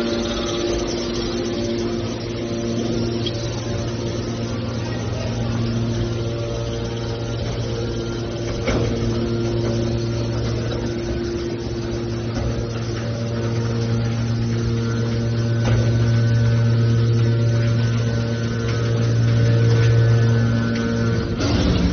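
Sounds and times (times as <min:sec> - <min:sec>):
hydraulic baler pump motor hum: 0:00.0 - 0:21.9.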